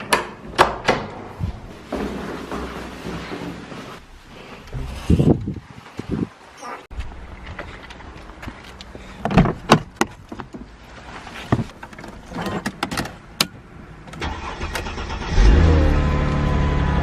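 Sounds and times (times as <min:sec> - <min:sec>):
car engine starting and idling: 0:13.1 - 0:17.0.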